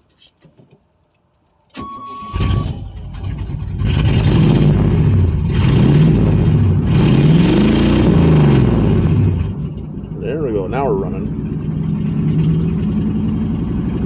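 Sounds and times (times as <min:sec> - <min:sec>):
short beep: 0:01.8 - 0:02.8
car engine revving: 0:02.3 - 0:14.0.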